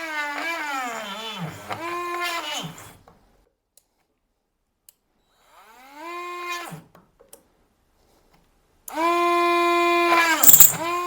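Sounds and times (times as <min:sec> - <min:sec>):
rotary tool whining: 0:10.2 - 0:11.0
small clicks: 0:10.4 - 0:10.8.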